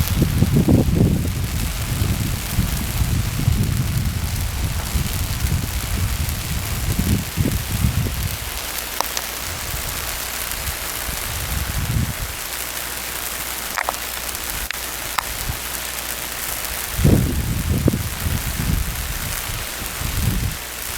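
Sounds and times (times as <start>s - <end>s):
low rumbles: 0.0s - 12.4s
crackling hiss of power lines: 0.0s - 20.9s.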